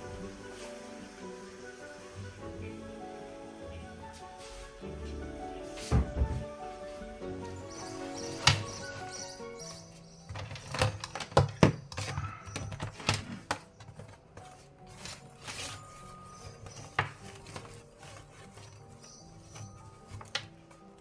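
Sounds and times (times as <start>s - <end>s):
soft background music: 0.0s - 21.0s
objects knocking and clattering: 5.8s - 6.6s, 10.3s - 20.6s.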